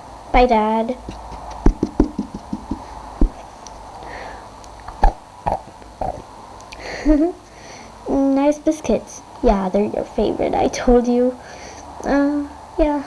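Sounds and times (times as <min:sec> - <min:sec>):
toy figures knocking on hard surface: 0:01.0 - 0:03.4.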